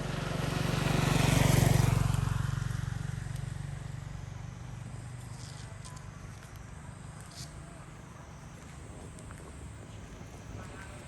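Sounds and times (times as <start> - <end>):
vehicle passing by: 0.0 - 5.4.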